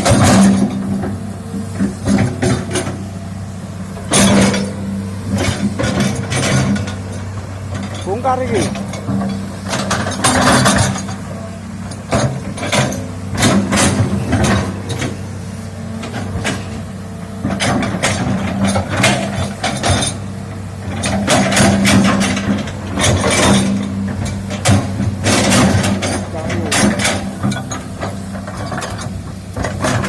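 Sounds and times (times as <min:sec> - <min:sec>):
excavator diesel engine running: 0:00.0 - 0:30.0.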